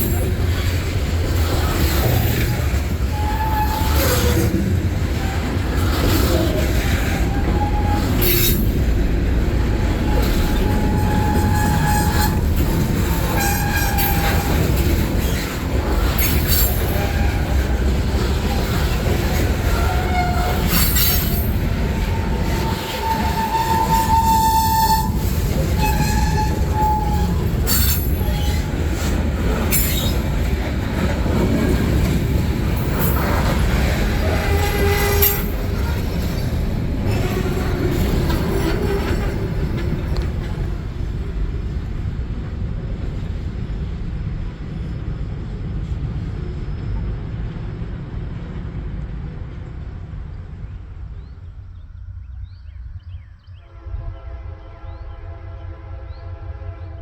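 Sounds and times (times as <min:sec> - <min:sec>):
freight train rumbling past: 0:00.0 - 0:57.0
metallic wheel squeals and clanks: 0:01.7 - 0:04.5, 0:05.9 - 0:08.8, 0:09.7 - 0:15.6, 0:16.2 - 0:17.6, 0:19.7 - 0:29.1, 0:29.7 - 0:30.3, 0:34.2 - 0:39.4.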